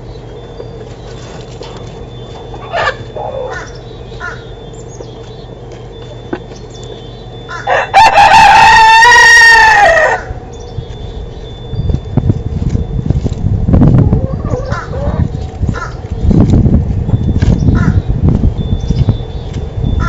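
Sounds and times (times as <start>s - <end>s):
short chicken calls: 2.5s - 4.6s
rooster crowing: 2.6s - 4.5s, 7.4s - 10.6s.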